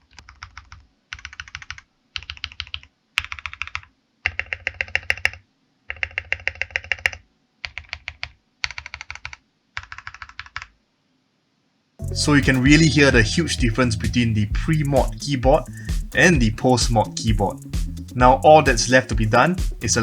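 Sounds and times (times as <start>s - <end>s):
rapid keyboard keystrokes: 0.0s - 10.7s.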